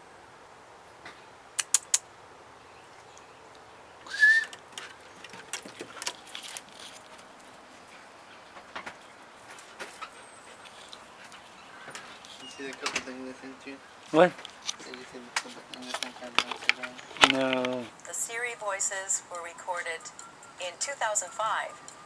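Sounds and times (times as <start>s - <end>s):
sharp clicks and taps: 1.6s - 2.0s.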